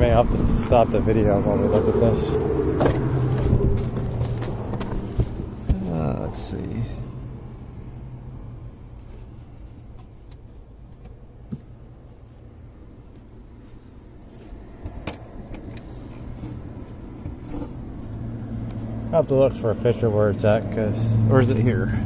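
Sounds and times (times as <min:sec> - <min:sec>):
clicks and knocks on dash trim: 0:02.7 - 0:05.9.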